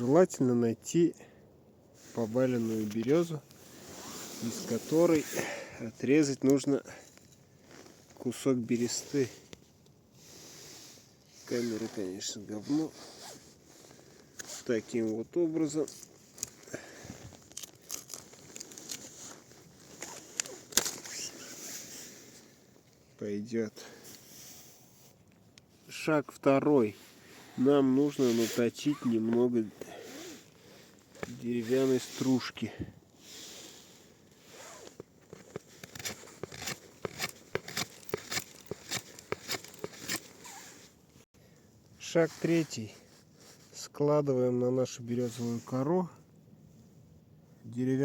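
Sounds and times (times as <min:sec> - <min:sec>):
knife scraping wood: 0:34.8 - 0:40.8
bark crackling and tearing: 0:35.4 - 0:40.4.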